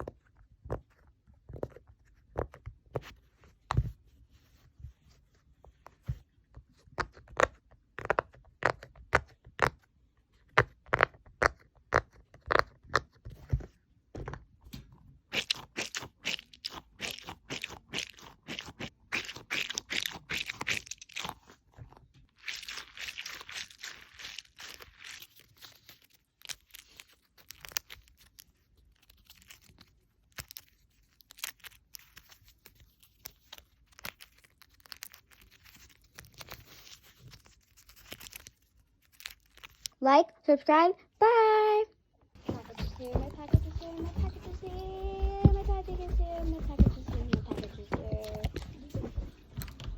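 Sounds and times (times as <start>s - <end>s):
crackling and scratching: 10.4s - 40.0s, 42.4s - 49.9s.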